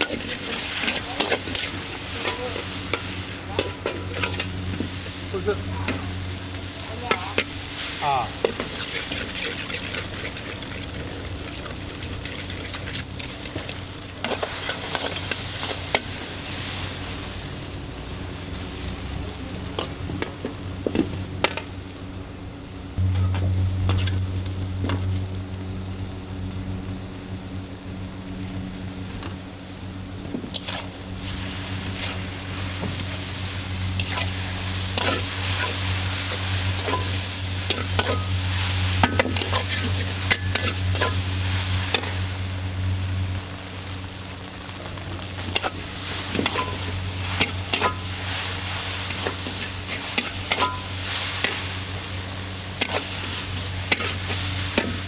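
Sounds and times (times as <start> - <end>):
spatula scraping a wok: 0.0 - 5.3, 7.1 - 17.0, 30.5 - 42.5, 45.2 - 55.0
food sizzling in a wok: 0.0 - 55.0
low hum: 22.9 - 29.1.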